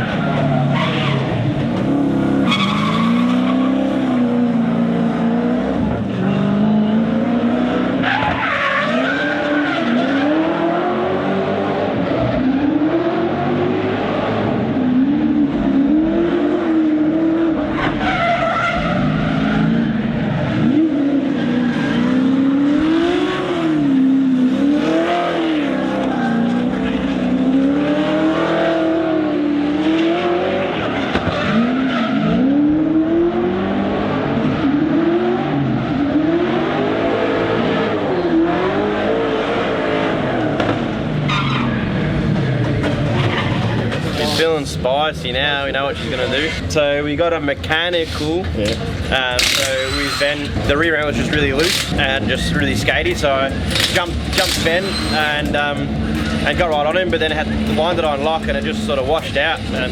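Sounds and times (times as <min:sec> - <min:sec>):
car engine revving: 0:00.0 - 0:59.9
tyres skidding and squealing: 0:00.0 - 0:59.9.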